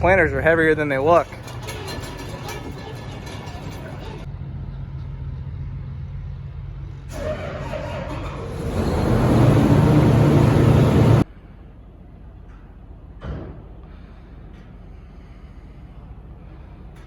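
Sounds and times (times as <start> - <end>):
vehicle engine running: 4.3 - 11.3.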